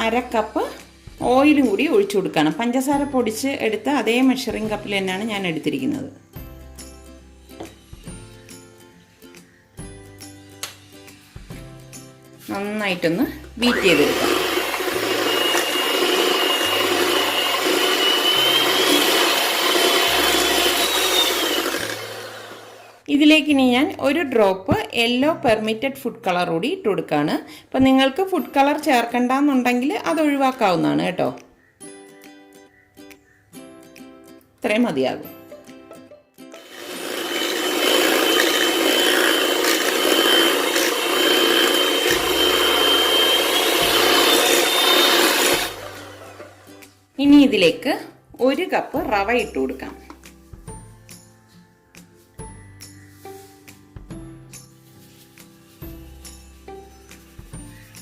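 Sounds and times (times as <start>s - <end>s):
electric hand mixer whisking batter: 13.6s - 23.0s, 36.6s - 46.6s.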